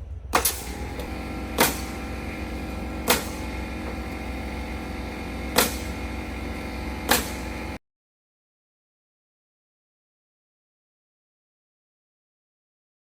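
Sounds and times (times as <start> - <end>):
steady machine hum: 0.0 - 7.8
nail gun shots: 0.4 - 4.8, 5.4 - 6.2, 7.0 - 7.8.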